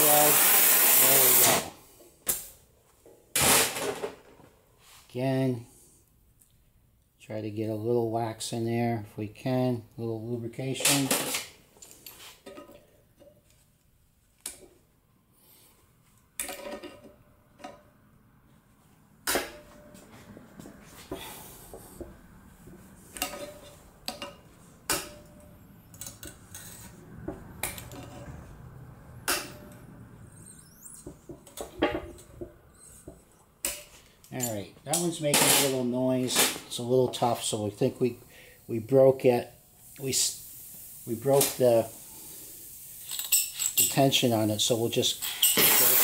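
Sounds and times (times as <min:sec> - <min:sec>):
faint steady hiss: 0:00.0 - 0:18.0, 0:20.6 - 0:46.0
metal tools clinking on iron: 0:43.0 - 0:44.2.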